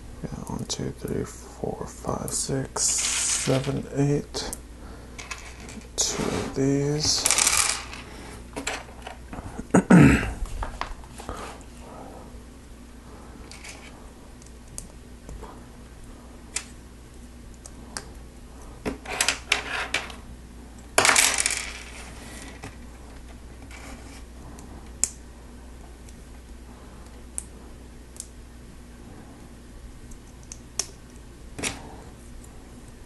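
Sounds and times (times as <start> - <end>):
plastic pieces clicking and clattering: 7.1 - 8.0, 21.0 - 22.6.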